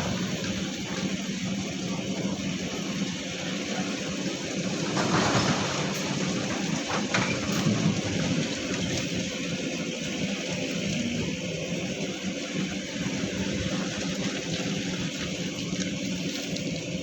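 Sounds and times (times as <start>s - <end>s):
heavy diesel machinery humming: 0.0s - 17.0s
loud rain-like rushing noise: 2.4s - 11.6s.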